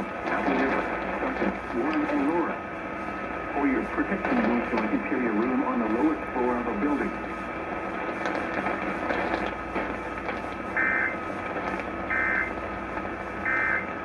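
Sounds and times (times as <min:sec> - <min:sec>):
radio receiver hiss: 0:00.0 - 0:14.0
digital data tone bursts: 0:10.8 - 0:11.2, 0:12.1 - 0:12.5, 0:13.4 - 0:13.9.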